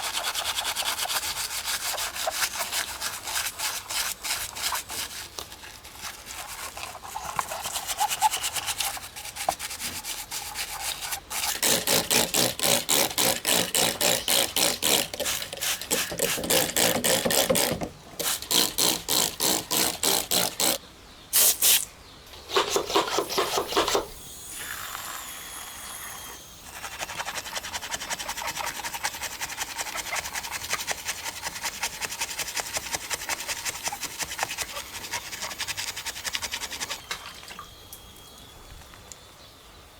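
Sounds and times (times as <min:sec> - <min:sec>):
brush scrubbing model car: 0:00.0 - 0:20.8, 0:26.6 - 0:37.1.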